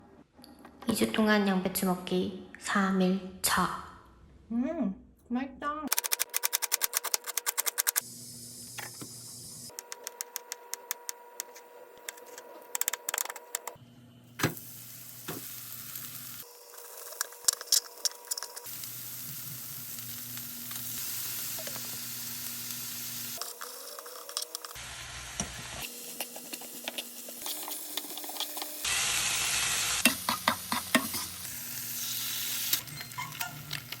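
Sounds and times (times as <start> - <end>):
food sizzling in a frying pan: 14.4 - 17.7, 18.6 - 34.0.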